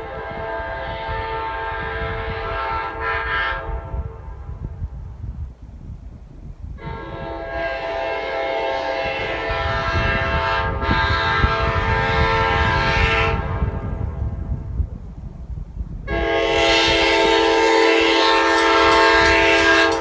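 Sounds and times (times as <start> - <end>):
train horn chord: 0.0 - 4.4, 6.8 - 14.0, 16.1 - 20.0
low air noise rumble: 0.0 - 20.0.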